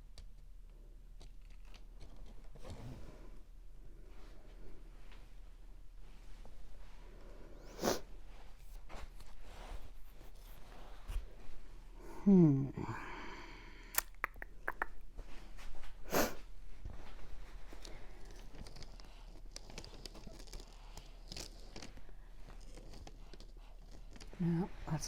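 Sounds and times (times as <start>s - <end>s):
person murmuring hmm: 12.0s - 13.2s.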